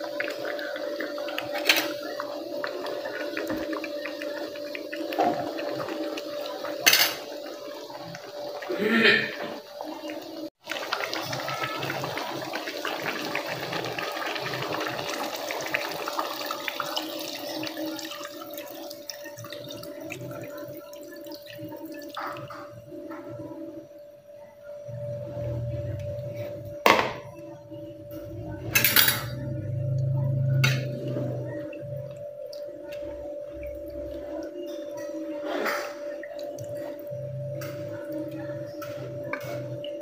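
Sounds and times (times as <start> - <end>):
water running and splashing: 0.0 - 22.8.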